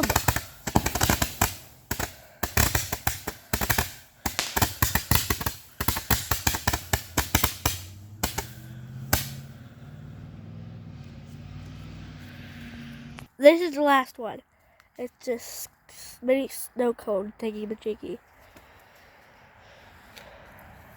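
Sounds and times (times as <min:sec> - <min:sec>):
firework bangs and cracks: 0:00.0 - 0:09.8.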